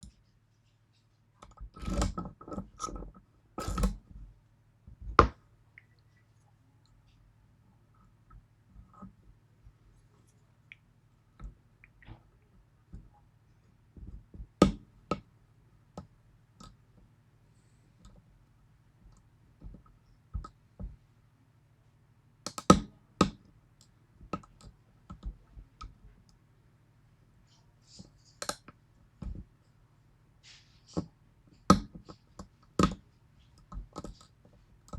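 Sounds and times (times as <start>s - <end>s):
lock picking tools scraping: 1.6s - 4.0s.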